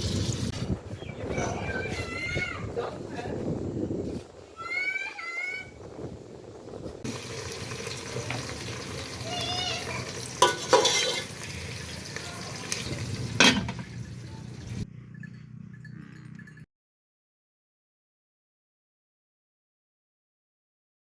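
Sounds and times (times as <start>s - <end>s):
food sizzling in a pot: 0.0s - 0.5s, 7.0s - 14.8s
metal spoon clanking against pot: 10.4s - 11.4s, 13.4s - 14.0s.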